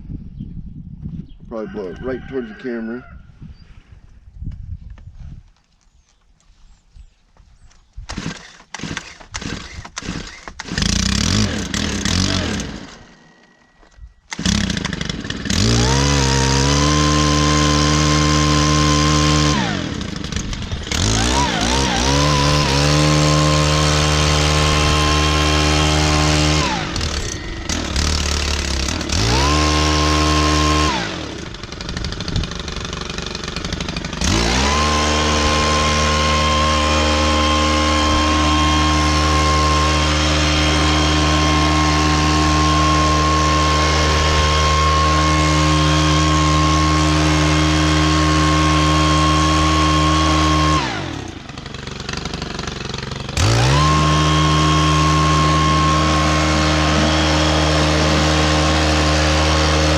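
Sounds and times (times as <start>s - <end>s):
gas leaf blower revving: 8.1s - 13.4s, 14.3s - 59.9s.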